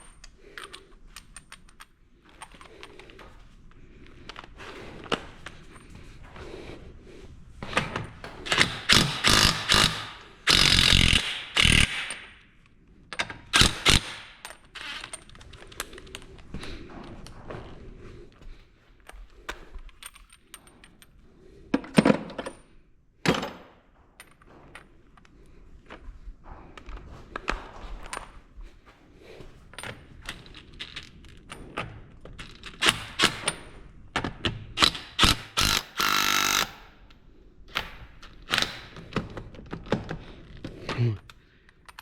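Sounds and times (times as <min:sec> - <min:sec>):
metal sockets and nuts clinking: 0:00.0 - 0:03.3, 0:13.1 - 0:16.2
pneumatic impact wrench hammering: 0:08.2 - 0:12.4, 0:13.5 - 0:15.0, 0:32.8 - 0:33.6, 0:34.8 - 0:37.0.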